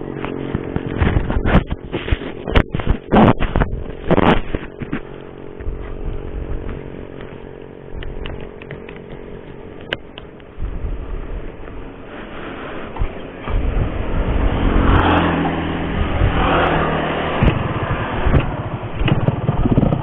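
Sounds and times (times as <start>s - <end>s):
motorcycle engine revving: 0.0s - 20.0s.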